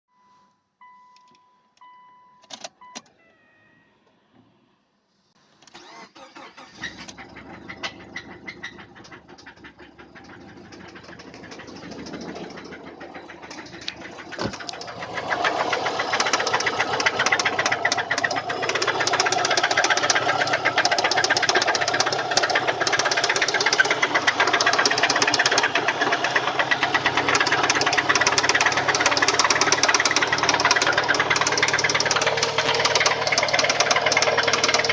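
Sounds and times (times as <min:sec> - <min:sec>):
car engine cranking and starting: 0:05.5 - 0:34.9
engine metallic knock: 0:09.2 - 0:34.9.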